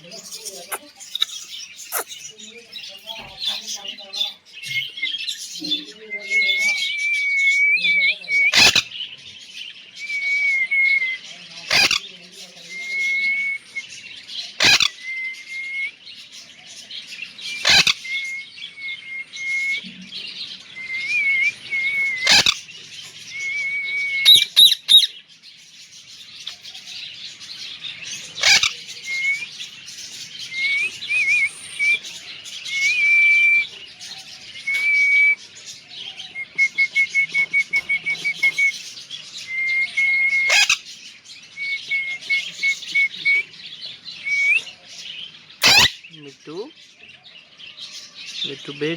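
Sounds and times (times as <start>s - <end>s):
high bird chatter: 0.0s - 48.9s
parrot chirping and whistling: 8.5s - 8.8s, 11.7s - 12.0s, 14.6s - 15.9s, 17.5s - 19.8s, 20.8s - 22.6s, 23.3s - 25.1s, 28.4s - 29.5s, 30.4s - 32.0s, 32.7s - 33.7s, 34.6s - 35.4s, 36.4s - 40.9s, 41.6s - 43.5s, 45.6s - 46.0s.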